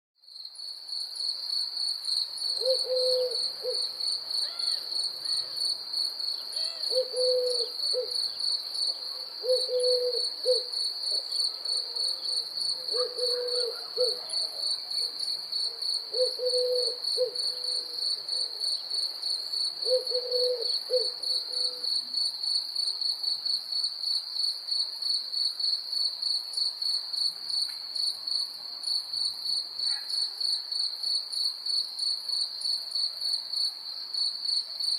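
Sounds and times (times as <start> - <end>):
crickets chirping: 0.2 - 34.9.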